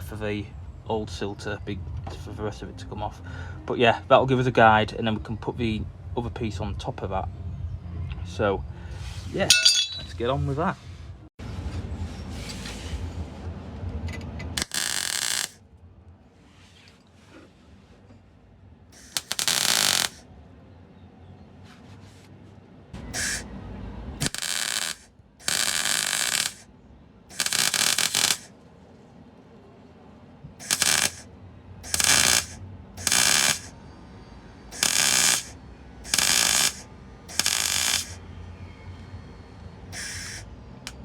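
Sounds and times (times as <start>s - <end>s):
crackling welding arc: 14.6s - 15.6s, 19.0s - 20.2s, 23.0s - 23.4s, 24.2s - 26.7s, 27.3s - 28.5s, 30.6s - 33.7s, 34.7s - 38.2s, 40.0s - 41.0s.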